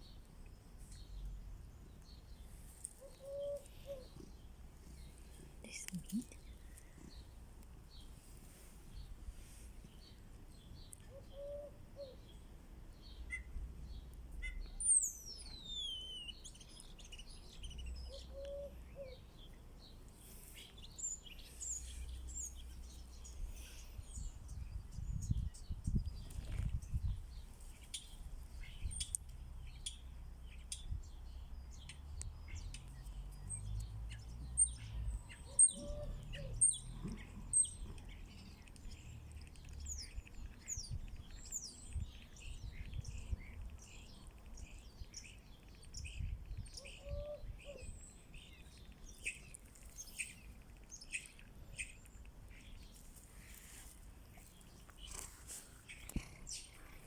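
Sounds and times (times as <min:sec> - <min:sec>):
birds chirping: 0:13.0 - 0:57.0.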